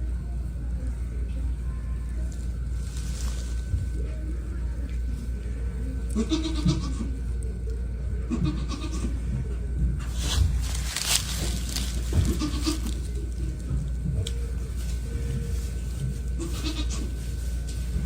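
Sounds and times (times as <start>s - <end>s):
steady low hum: 0.0s - 18.0s
young goats bleating: 6.1s - 7.4s, 8.2s - 9.3s, 11.6s - 13.4s, 16.4s - 17.2s.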